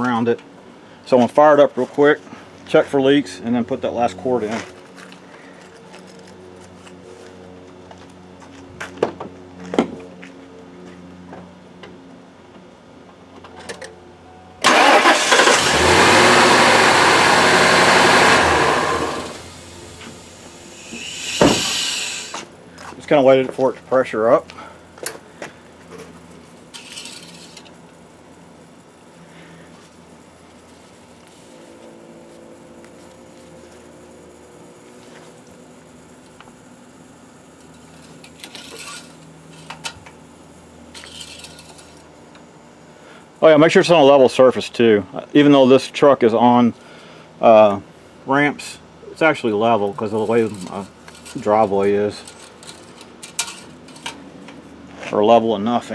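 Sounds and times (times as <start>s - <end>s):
engine cranking and starting: 14.6s - 22.4s
short rattle: 16.3s - 22.4s.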